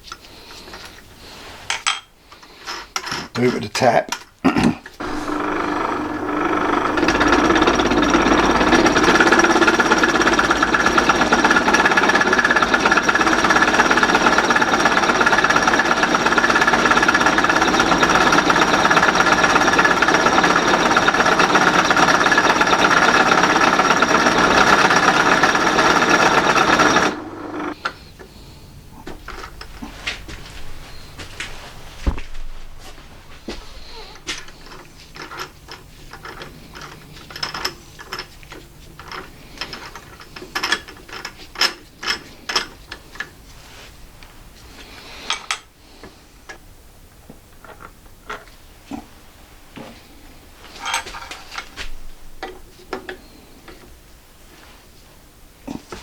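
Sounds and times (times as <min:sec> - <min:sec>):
metal lathe rattling: 0:05.0 - 0:27.8.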